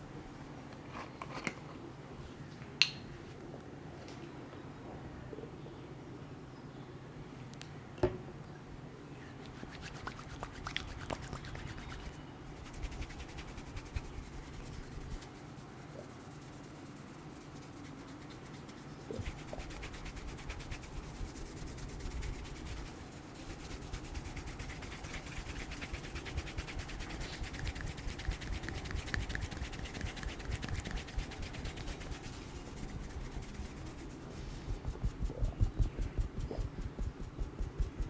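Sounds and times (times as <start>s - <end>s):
hands rubbing skin and hair: 9.4s - 38.0s.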